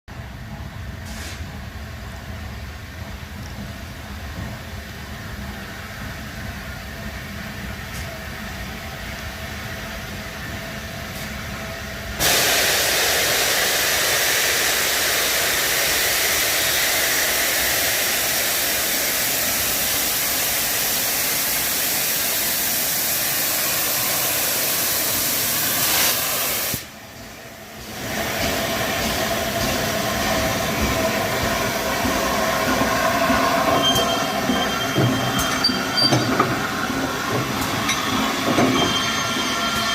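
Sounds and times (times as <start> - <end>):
steam hissing: 12.2 - 27.0, 27.7 - 39.9
train wheel squeal: 29.2 - 39.9.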